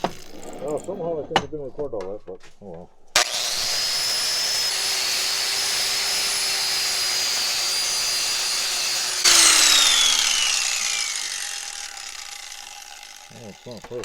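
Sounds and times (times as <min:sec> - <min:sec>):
angle grinder with wire wheel: 0:00.0 - 0:01.1, 0:03.2 - 0:14.0
motor winding down whine: 0:03.2 - 0:14.0.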